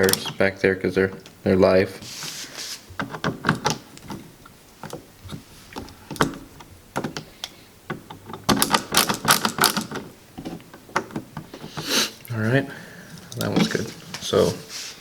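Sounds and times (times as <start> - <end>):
wall switches clicking: 0.0 - 0.5, 3.0 - 11.6.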